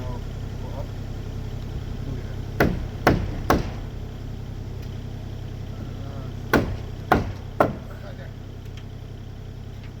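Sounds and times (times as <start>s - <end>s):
mini excavator engine running: 0.0s - 10.0s
heavy blows on timber beam: 2.6s - 4.0s, 6.5s - 8.1s.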